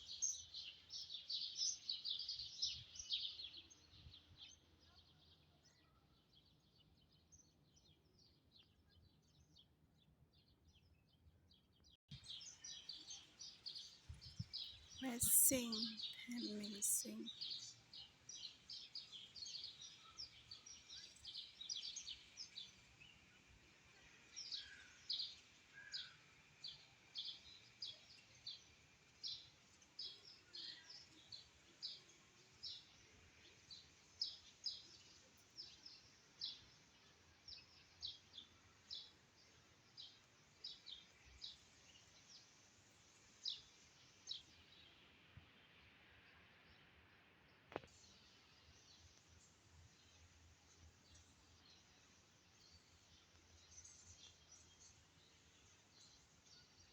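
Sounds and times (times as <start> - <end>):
faint background hiss: 15.0 - 17.3.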